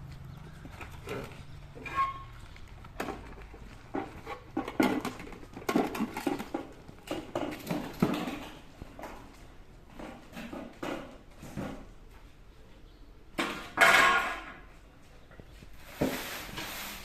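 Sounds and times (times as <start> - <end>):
hard objects knocking and clattering: 0.5 - 11.9, 13.4 - 14.7.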